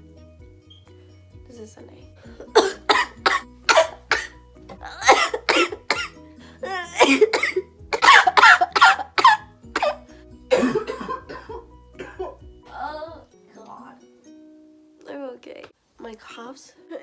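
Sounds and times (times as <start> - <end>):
faint music: 0.0 - 17.0
woman coughing and wheezing: 2.4 - 12.4.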